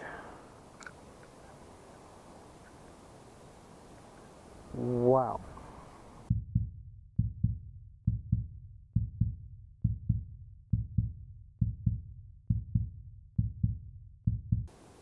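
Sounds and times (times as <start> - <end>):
heartbeat thumps: 6.3 - 14.7.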